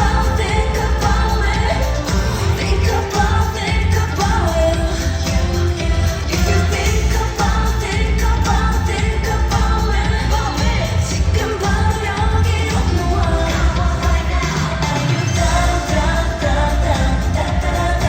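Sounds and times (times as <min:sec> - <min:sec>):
heavy bass beat: 0:00.0 - 0:18.0
pop song over sound system: 0:00.0 - 0:18.0
vocals: 0:00.0 - 0:18.0.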